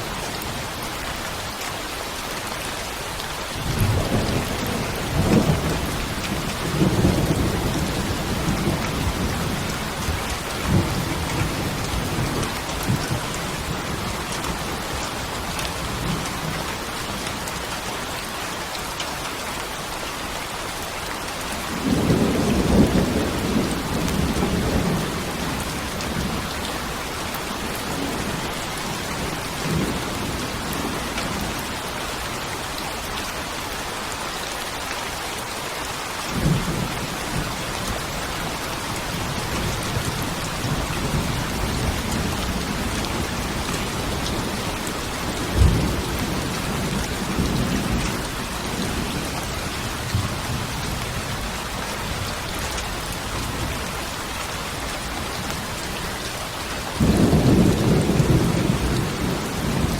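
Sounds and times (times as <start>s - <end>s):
heavy rain hissing: 0.0s - 59.9s
thunder rumbling: 36.4s - 52.3s, 57.0s - 59.9s.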